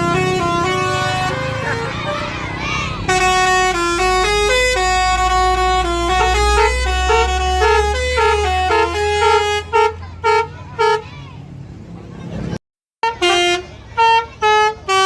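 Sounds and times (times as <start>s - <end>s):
short horn toots: 0.0s - 11.0s
bus horn melody: 0.0s - 11.1s, 13.0s - 15.0s
bus engine rumble: 0.0s - 15.0s.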